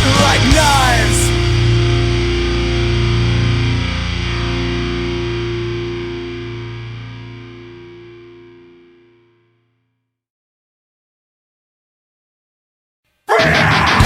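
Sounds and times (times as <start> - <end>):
distorted electric guitar chord: 0.0 - 9.5.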